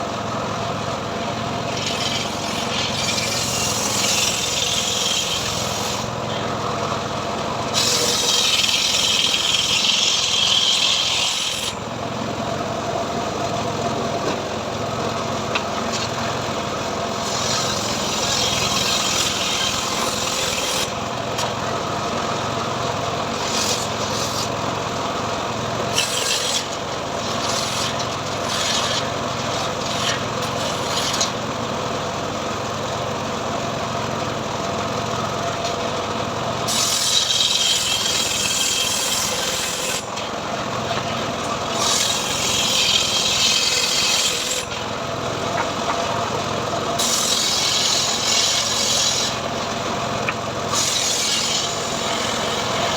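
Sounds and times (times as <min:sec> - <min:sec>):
sawmill engine humming: 0:00.0 - 0:52.9
saw blade hissing through log: 0:01.8 - 0:06.2, 0:07.7 - 0:11.8, 0:17.1 - 0:20.9, 0:23.3 - 0:24.6, 0:25.9 - 0:31.3, 0:36.7 - 0:40.1, 0:41.7 - 0:44.8, 0:47.0 - 0:49.5, 0:50.7 - 0:52.9.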